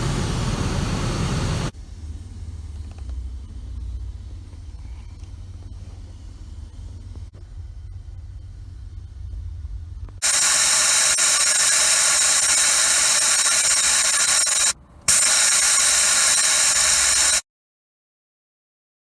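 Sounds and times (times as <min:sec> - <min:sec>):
low rumble: 0:00.0 - 0:10.2
spray jet hissing: 0:10.2 - 0:17.4.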